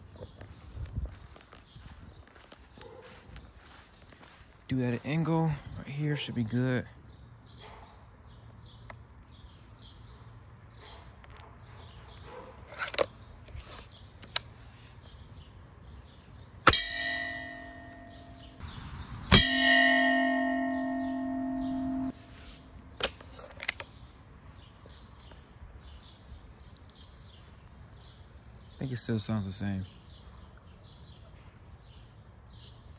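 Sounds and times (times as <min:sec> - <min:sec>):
metal pot ringing: 0:16.7 - 0:18.6, 0:19.3 - 0:22.2.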